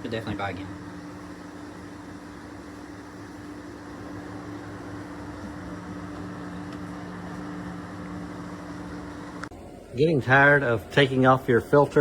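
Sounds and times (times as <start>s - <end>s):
electric fan humming: 0.0s - 12.0s.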